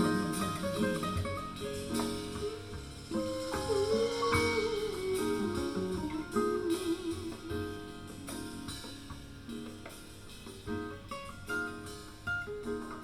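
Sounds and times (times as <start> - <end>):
instrumental music through loudspeakers: 0.0 - 11.1.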